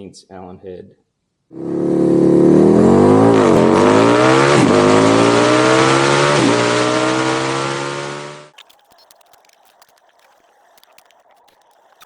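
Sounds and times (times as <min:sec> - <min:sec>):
power tool motor whine: 0:01.6 - 0:08.5.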